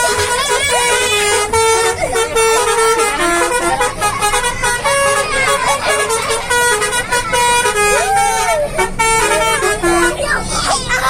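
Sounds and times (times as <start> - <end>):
bus horn playing a melody: 0.0 - 11.0.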